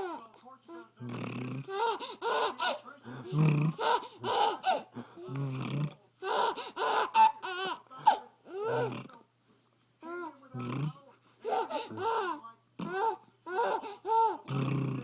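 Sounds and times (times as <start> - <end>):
person making warbling noises: 1.0 - 9.1, 10.6 - 15.0
baby laughing: 1.6 - 5.3, 6.2 - 9.0, 11.4 - 14.5.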